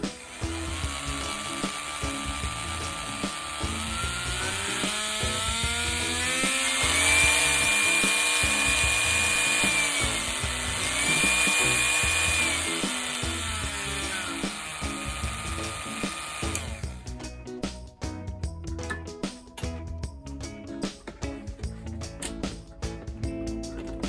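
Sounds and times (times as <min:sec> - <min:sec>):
rotary tool motor whining: 0:00.0 - 0:17.0.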